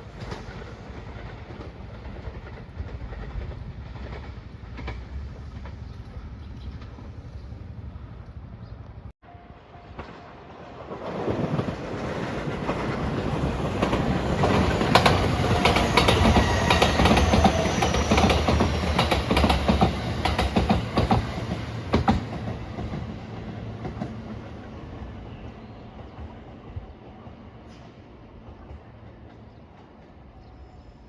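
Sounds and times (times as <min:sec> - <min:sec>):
train passing: 0:00.0 - 0:31.0
wheels clacking over rail joints: 0:10.8 - 0:24.6.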